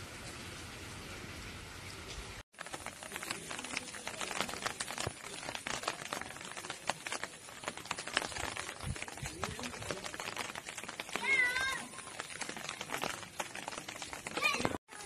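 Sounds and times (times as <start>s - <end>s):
rain on a hard surface: 0.0s - 15.0s.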